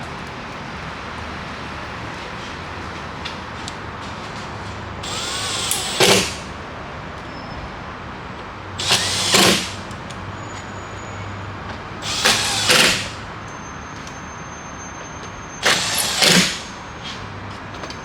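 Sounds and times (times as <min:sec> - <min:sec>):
handheld power tool bursts: 0:05.0 - 0:06.6, 0:08.8 - 0:10.0, 0:12.0 - 0:13.3, 0:15.5 - 0:17.2.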